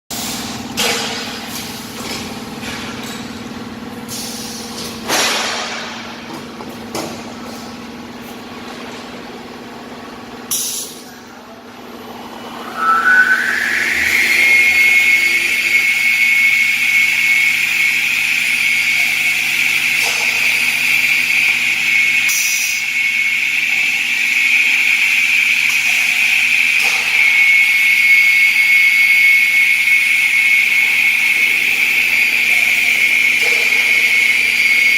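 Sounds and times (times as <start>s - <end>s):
low steady hum: 11.3s - 17.1s
saw motor whine: 12.2s - 19.8s.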